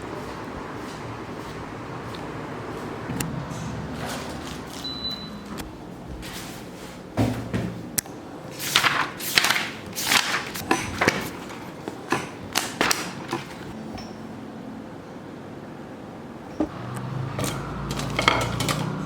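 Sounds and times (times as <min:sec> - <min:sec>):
sharp knocks and clattering: 0:07.2 - 0:07.9, 0:16.5 - 0:19.0.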